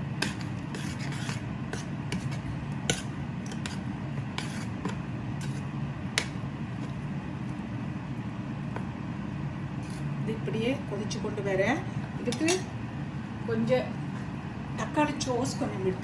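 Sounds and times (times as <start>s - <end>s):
metal spoon scraping pot: 0.2s - 3.8s, 4.4s - 5.7s.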